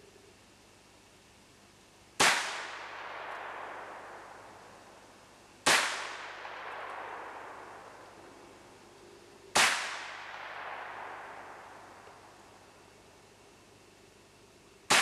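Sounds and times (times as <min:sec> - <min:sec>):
gunshots echoing: 0:02.2 - 0:04.7, 0:05.6 - 0:08.2, 0:09.5 - 0:12.3.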